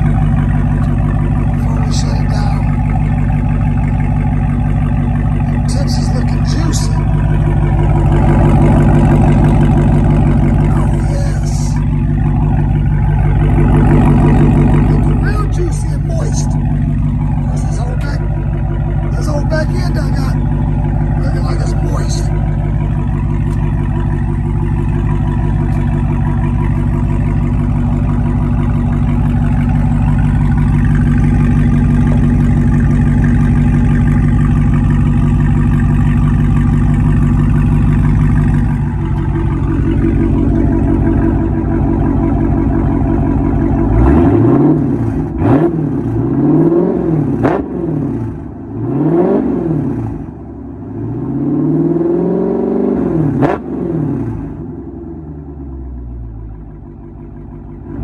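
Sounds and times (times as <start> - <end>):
engine revving: 0.0 - 55.3
engine idling: 0.0 - 58.0.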